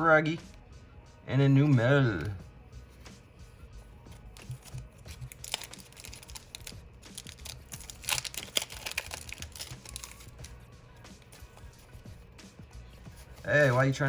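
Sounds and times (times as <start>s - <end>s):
cards clicking and flicking: 4.0s - 12.6s
foil wrapper crinkling: 4.2s - 11.9s.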